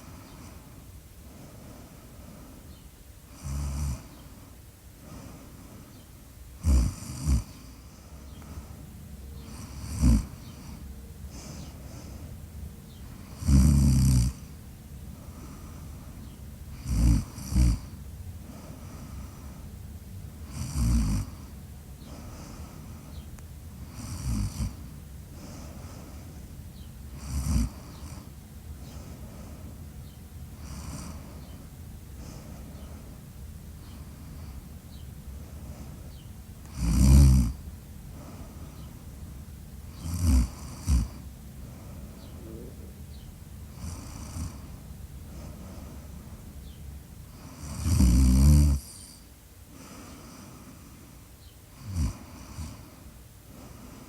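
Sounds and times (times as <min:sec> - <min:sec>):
woman snoring: 0:03.4 - 0:04.1, 0:06.6 - 0:07.6, 0:09.6 - 0:10.4, 0:13.3 - 0:14.4, 0:16.8 - 0:17.9, 0:20.5 - 0:21.4, 0:23.9 - 0:24.8, 0:27.2 - 0:28.3, 0:30.6 - 0:31.3, 0:36.7 - 0:37.6, 0:40.0 - 0:41.2, 0:43.8 - 0:44.6, 0:47.4 - 0:49.2, 0:51.8 - 0:52.8.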